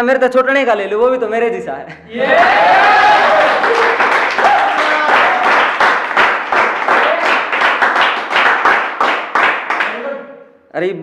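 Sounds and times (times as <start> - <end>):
audience clapping: 2.3 - 10.1.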